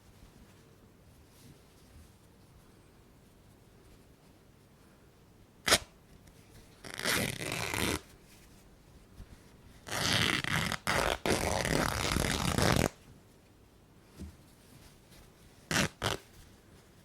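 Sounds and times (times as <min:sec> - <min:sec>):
cloth ripping: 0:05.6 - 0:05.9, 0:06.8 - 0:08.1, 0:09.8 - 0:13.0, 0:15.7 - 0:16.2.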